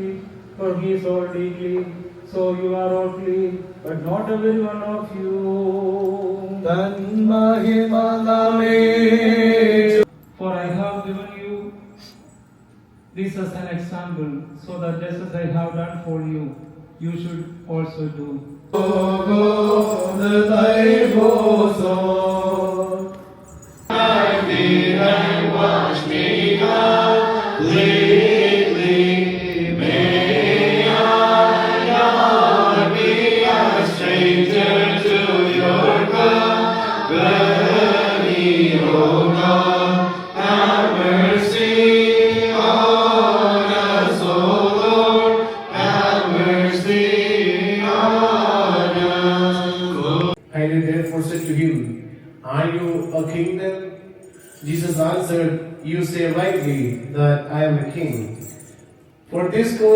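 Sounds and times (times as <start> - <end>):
liturgical hymn chanted: 0.0 - 11.8, 18.7 - 53.6.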